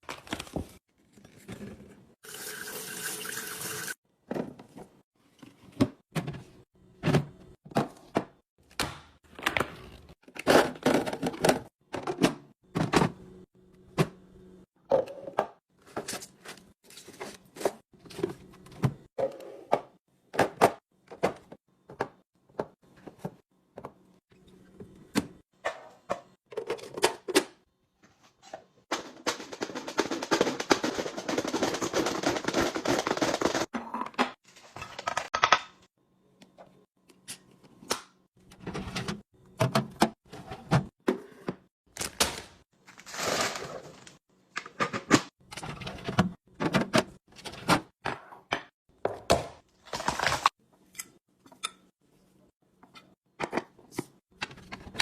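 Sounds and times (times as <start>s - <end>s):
packages clicking and thunking: 28.9s - 33.7s.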